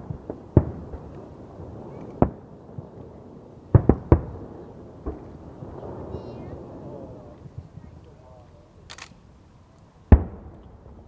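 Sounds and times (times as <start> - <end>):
fireworks bangs: 0.0 - 8.0
faint fireworks pops: 0.0 - 9.2.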